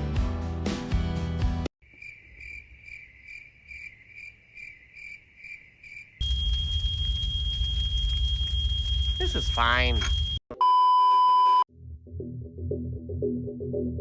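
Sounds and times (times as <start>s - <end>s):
background music: 0.0s - 1.7s
cricket chirping: 1.8s - 9.2s.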